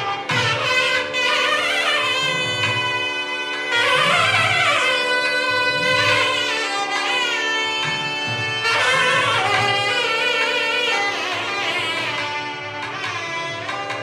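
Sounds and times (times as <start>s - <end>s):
reed wind instrument melody: 0.0s - 14.0s.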